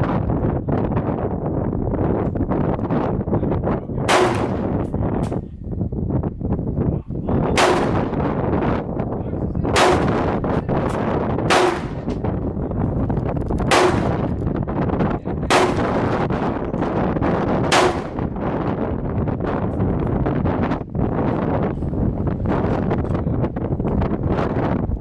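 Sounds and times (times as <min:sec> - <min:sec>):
gunshots with echo: 0:04.1 - 0:04.9, 0:07.5 - 0:08.3, 0:09.7 - 0:10.4, 0:11.5 - 0:12.3, 0:13.7 - 0:14.4, 0:15.5 - 0:16.4, 0:17.7 - 0:18.4.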